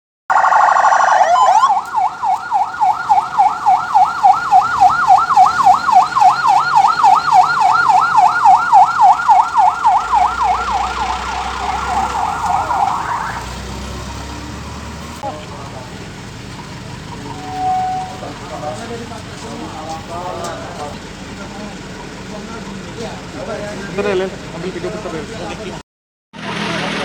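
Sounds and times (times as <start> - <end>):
electronic siren yelping: 0.3 - 13.6, 17.1 - 18.4
vehicle engine rumble: 0.3 - 25.8.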